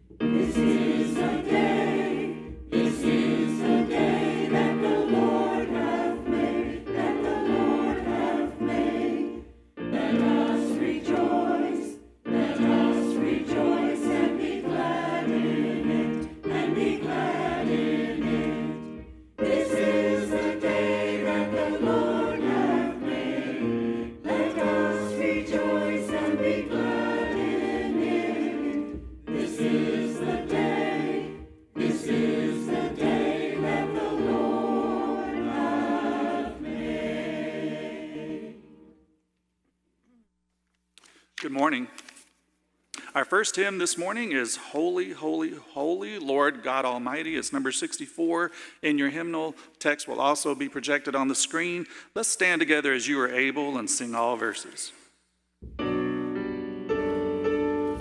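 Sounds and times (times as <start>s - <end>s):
church choir singing: 0.0s - 39.2s, 52.5s - 58.0s
singers breathing: 23.8s - 24.3s, 48.5s - 48.8s, 51.8s - 52.2s.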